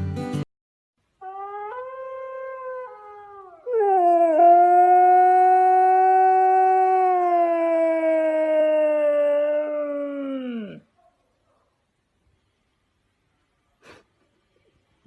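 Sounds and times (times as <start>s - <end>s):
dog howling: 1.2s - 10.9s.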